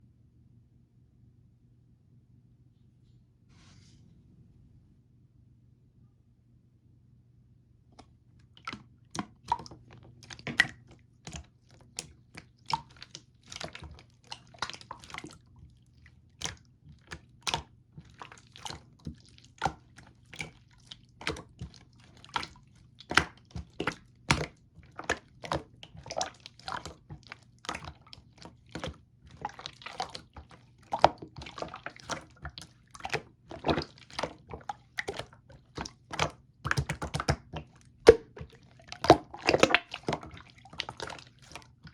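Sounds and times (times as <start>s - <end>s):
faint low hum: 0.0s - 10.2s
slime squishing with wet pops: 7.9s - 41.9s.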